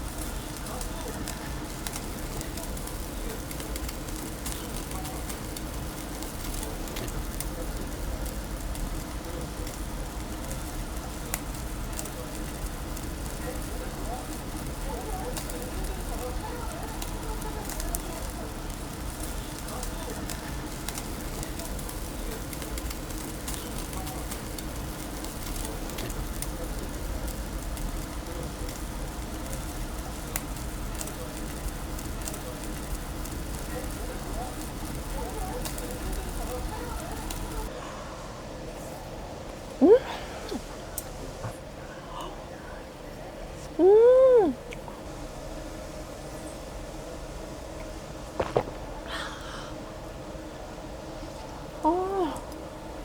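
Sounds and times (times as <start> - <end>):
crackles and pops: 0.0 - 37.7, 47.8 - 49.1
meat sizzling on a grill: 0.0 - 37.8, 43.2 - 48.2, 49.8 - 53.0.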